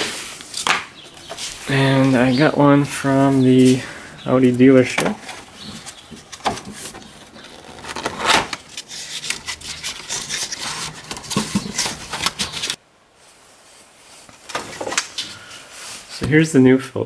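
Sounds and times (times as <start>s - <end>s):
air filter packaging rustling: 0.0s - 12.8s.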